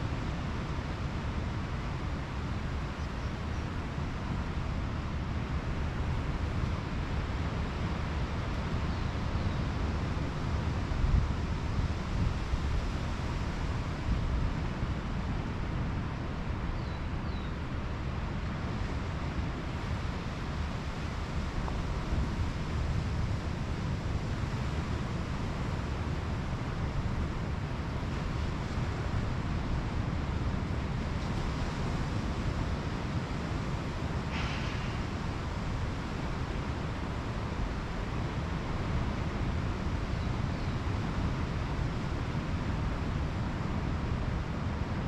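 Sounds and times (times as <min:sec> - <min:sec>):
wind rumbling on microphone: 0:00.0 - 0:45.0
surf washing onto a beach: 0:17.6 - 0:45.0.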